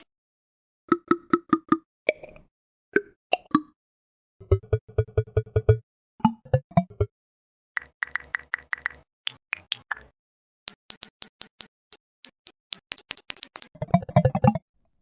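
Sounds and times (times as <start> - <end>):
sharp clicks and plopping blips: 12.7 - 14.6.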